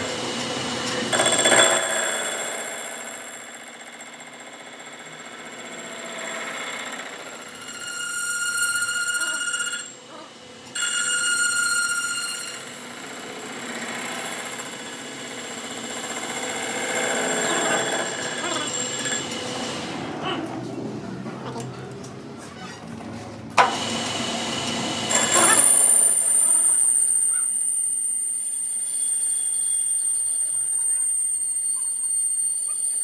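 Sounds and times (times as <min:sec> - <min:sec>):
high-pitched mechanical whine: 0:06.7 - 0:19.4, 0:25.0 - 0:33.0.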